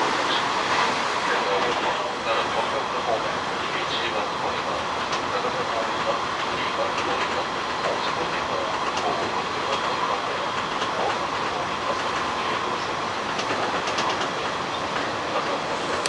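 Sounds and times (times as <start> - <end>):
train rolling on rails: 0.0 - 16.0.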